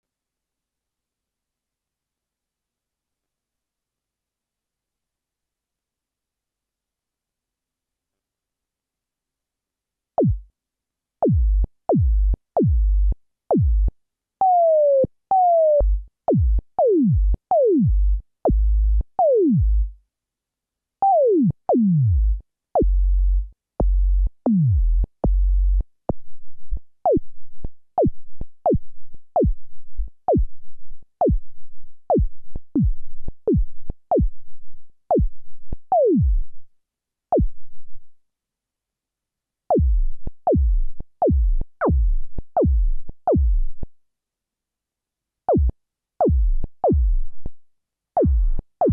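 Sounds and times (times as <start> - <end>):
synthesized snare drum hits: 48.2 - 48.9.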